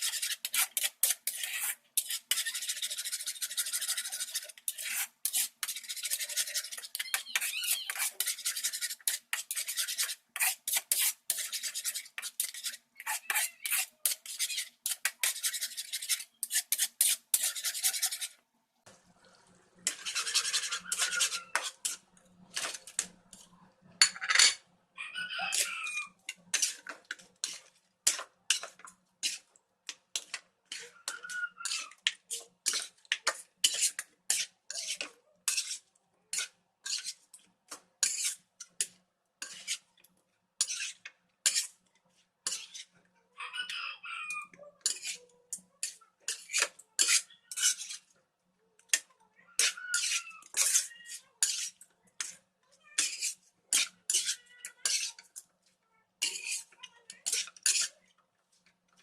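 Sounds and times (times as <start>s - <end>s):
utensils scraping: 0.0s - 18.4s, 19.9s - 24.6s, 25.4s - 29.5s, 30.1s - 37.2s, 38.0s - 39.9s, 40.6s - 41.7s, 42.4s - 43.0s, 44.8s - 48.1s, 49.6s - 52.4s, 53.0s - 55.5s, 56.2s - 57.9s
utensils clinking against dishes: 56.2s - 57.9s.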